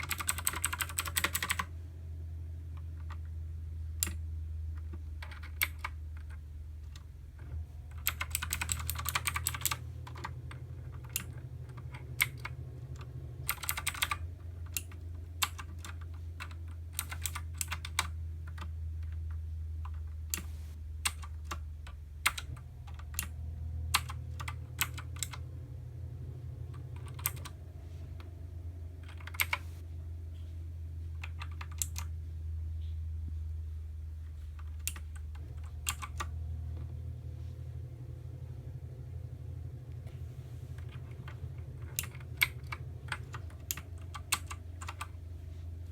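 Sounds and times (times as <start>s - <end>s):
clicky keyboard typing: 0.0s - 1.7s, 4.8s - 23.3s, 23.9s - 25.5s, 26.7s - 27.6s, 29.0s - 29.7s, 31.2s - 32.1s, 34.6s - 36.9s, 40.8s - 45.2s
steady low hum: 0.0s - 45.9s.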